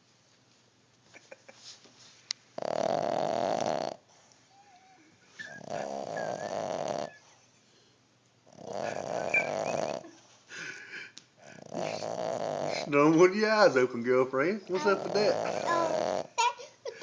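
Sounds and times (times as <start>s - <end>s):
dog snoring: 2.6s - 7.3s, 8.5s - 10.2s, 11.4s - 13.3s, 14.6s - 16.4s.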